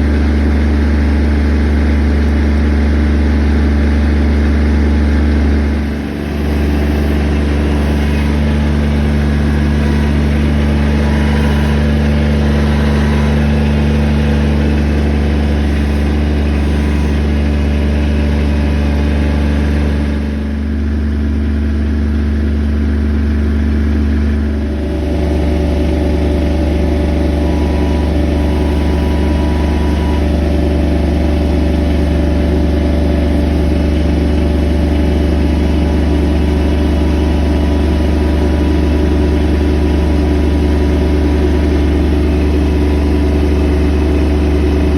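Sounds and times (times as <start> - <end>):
engine running: 0.0 - 44.9.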